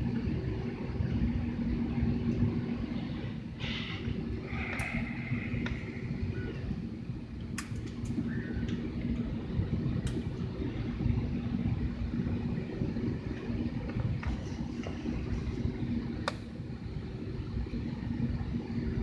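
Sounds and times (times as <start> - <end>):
faint steady hum: 0.0 - 19.0
vehicle rumble from inside: 1.8 - 16.2.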